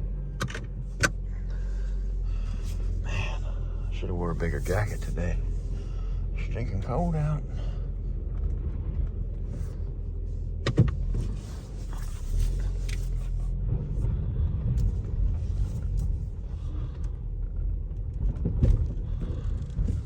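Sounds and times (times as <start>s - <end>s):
car road and drivetrain rumble: 0.0s - 20.0s.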